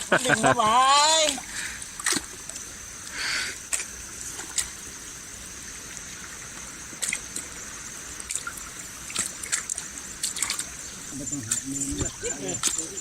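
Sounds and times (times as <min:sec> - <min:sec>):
river water trickling: 0:00.0 - 0:13.0
small sharp splashes: 0:01.1 - 0:02.7, 0:05.9 - 0:10.8.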